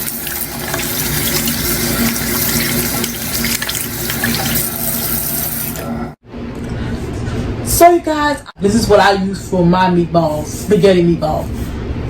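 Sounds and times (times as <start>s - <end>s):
tap water running into sink: 0.0s - 6.1s.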